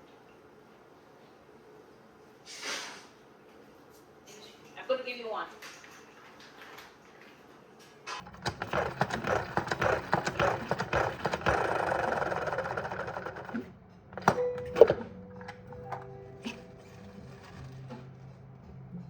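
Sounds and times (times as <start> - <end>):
mechanical device rattling and whirring: 8.2 - 14.4.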